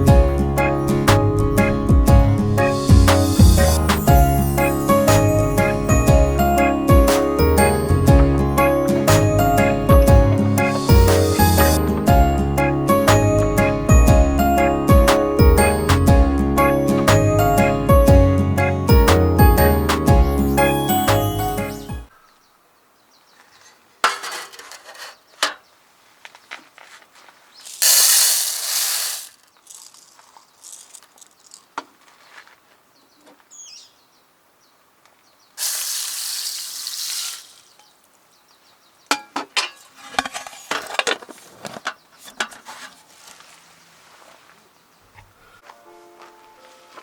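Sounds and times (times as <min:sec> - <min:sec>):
food sizzling in a wok: 0:27.7 - 0:29.4, 0:35.6 - 0:37.8
utensil clinking on metal: 0:27.7 - 0:29.4.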